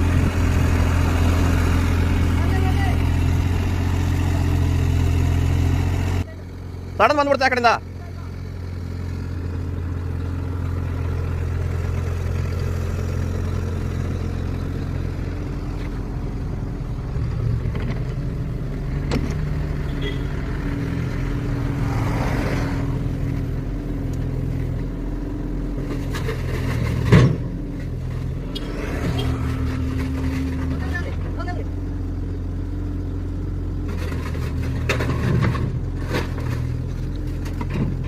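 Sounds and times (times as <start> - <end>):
diesel engine running: 0.0 - 38.0.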